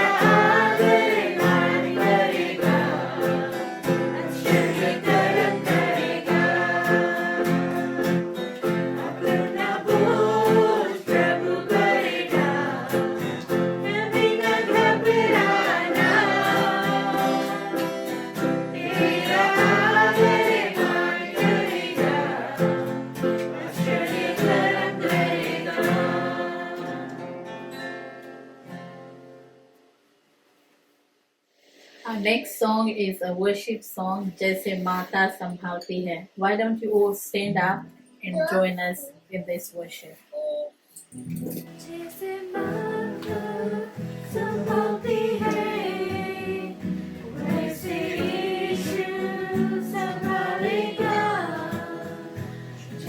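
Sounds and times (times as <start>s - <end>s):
person singing: 0.0s - 8.2s, 8.9s - 13.2s, 13.9s - 18.2s, 18.8s - 22.5s, 38.3s - 39.2s, 40.3s - 40.7s, 41.8s - 53.0s
guitar accompaniment: 0.0s - 29.8s, 37.0s - 53.0s.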